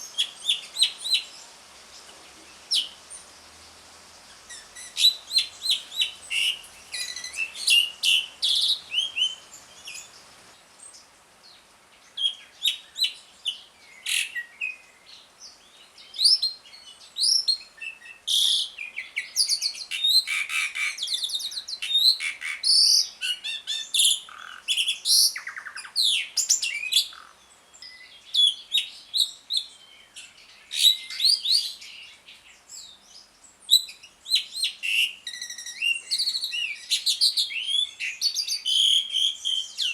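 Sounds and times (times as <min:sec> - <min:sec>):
starling singing chirps and whistles: 0:00.0 - 0:03.3, 0:04.3 - 0:11.1, 0:12.1 - 0:39.9.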